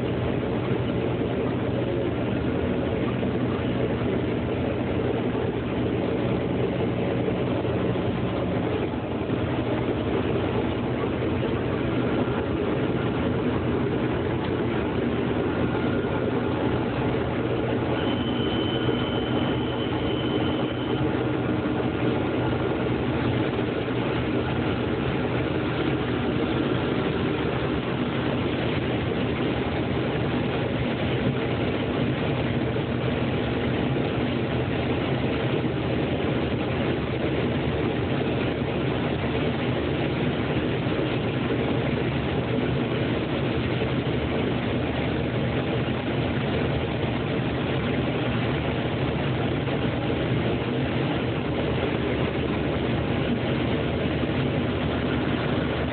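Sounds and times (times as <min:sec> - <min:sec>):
diesel engine drone: 0:00.0 - 0:55.9
faint high whine: 0:00.0 - 0:55.9.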